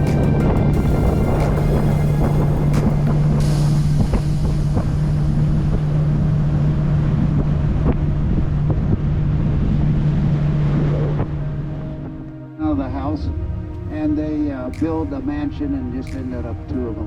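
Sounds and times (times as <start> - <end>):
wind buffeting microphone: 0.0 - 12.3
boat motor humming: 0.0 - 12.6.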